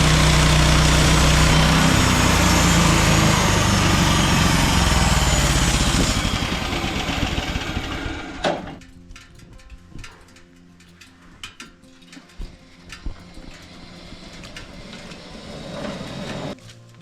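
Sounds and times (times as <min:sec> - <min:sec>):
sawmill gas engine running: 0:00.0 - 0:08.8, 0:12.7 - 0:16.6.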